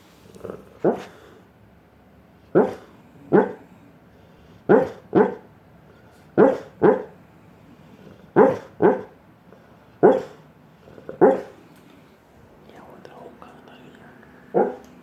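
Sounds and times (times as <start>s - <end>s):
sharp bark-like calls: 2.5s - 3.6s, 4.7s - 5.5s, 6.4s - 7.2s, 8.4s - 9.2s, 10.0s - 10.4s, 11.2s - 11.6s, 14.5s - 14.9s.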